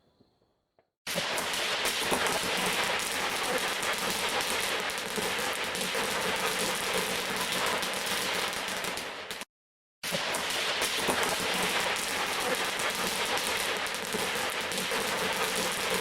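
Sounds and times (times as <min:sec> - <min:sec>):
firework fountain hissing and crackling: 0:01.1 - 0:16.0.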